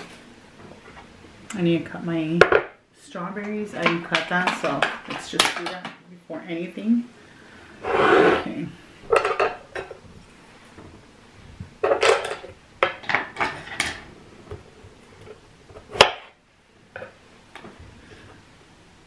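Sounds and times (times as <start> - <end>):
kitchen utensils clattering: 9.1 - 10.0, 11.8 - 14.1.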